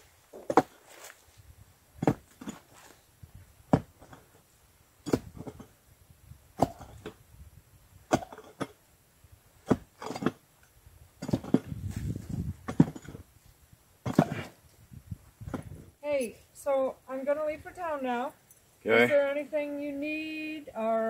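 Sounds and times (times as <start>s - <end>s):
dirt clods knocking: 0.3s - 1.2s, 2.0s - 3.0s, 3.7s - 4.4s, 5.0s - 5.8s, 9.6s - 10.4s, 11.2s - 13.3s
pickaxe striking frozen ground: 5.0s - 5.6s.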